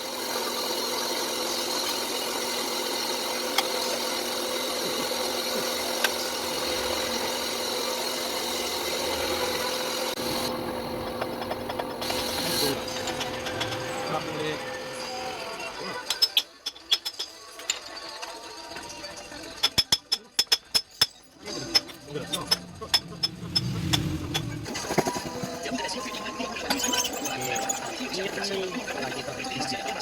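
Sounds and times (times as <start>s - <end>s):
power tool motor humming: 4.8s - 15.6s.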